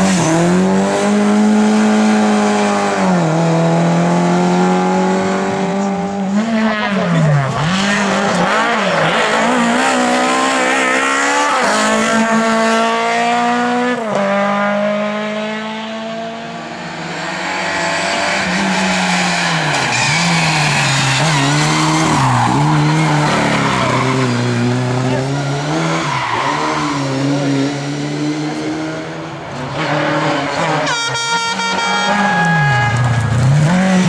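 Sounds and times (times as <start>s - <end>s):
race car engine revving: 0.0s - 34.0s
tyre squeal: 18.4s - 24.6s.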